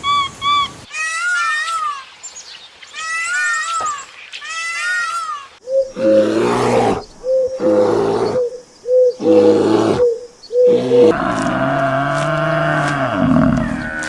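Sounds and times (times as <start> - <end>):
animal calling: 2.9 - 14.0.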